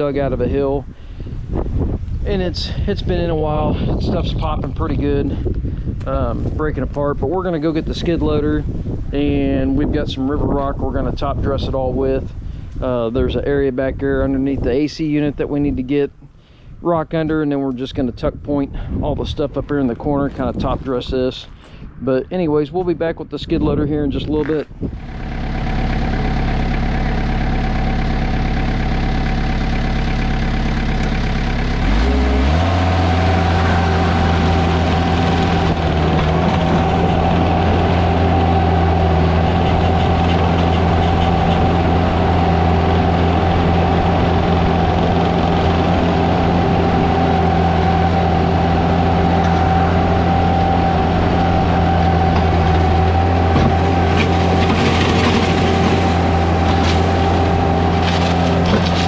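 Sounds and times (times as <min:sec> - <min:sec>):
diesel engine revving: 0:24.8 - 0:59.0
steady mechanical whine: 0:24.8 - 0:59.0.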